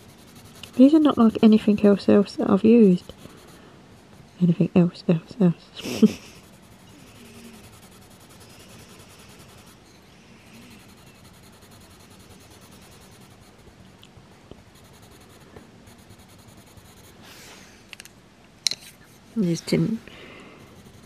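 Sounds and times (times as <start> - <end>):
pencil scratching on paper: 0.0 - 3.6, 6.0 - 13.7, 14.8 - 17.2, 20.6 - 21.0.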